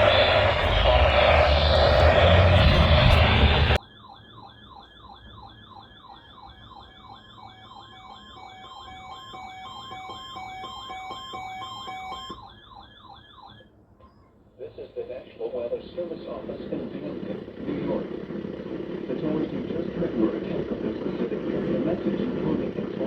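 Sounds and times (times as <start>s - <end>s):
electronic siren wailing: 0.0s - 13.6s
two-tone beeping alarm: 0.0s - 13.7s.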